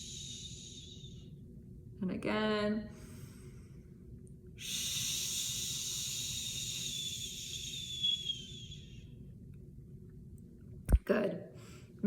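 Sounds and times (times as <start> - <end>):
woman breathing out slowly: 4.6 - 7.8.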